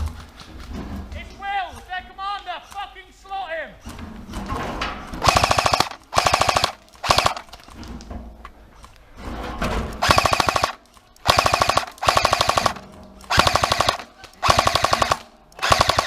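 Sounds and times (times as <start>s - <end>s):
airsoft gun firing bursts: 5.2s - 7.6s, 10.0s - 16.0s.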